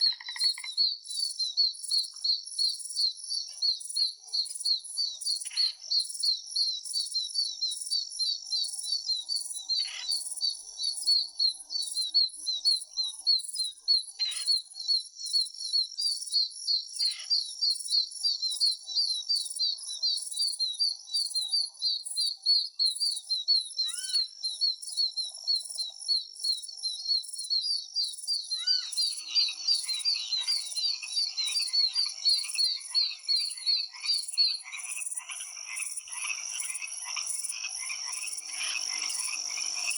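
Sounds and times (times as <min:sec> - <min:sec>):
insects chirping: 0:00.0 - 0:00.8, 0:17.2 - 0:39.9
frogs croaking: 0:00.0 - 0:01.0, 0:18.5 - 0:39.9.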